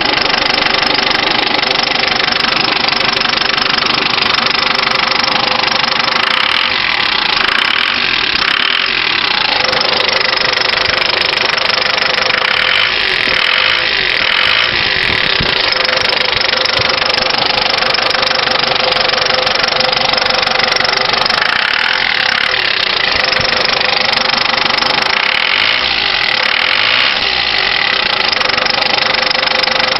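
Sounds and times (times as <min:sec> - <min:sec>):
diesel engine running with knock: 0:00.0 - 0:29.9.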